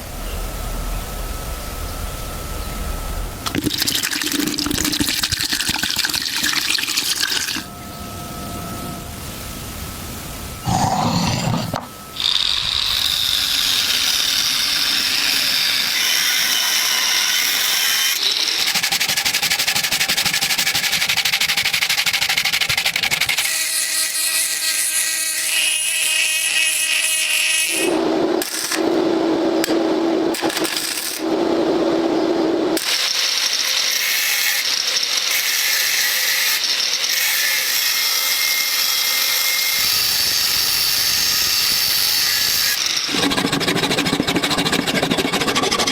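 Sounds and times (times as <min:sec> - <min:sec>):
power tools grinding metal: 0:32.8 - 0:45.9.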